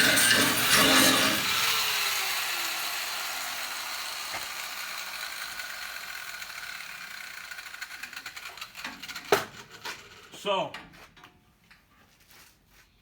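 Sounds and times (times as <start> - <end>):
angle grinder cutting steel: 0.0 - 9.1.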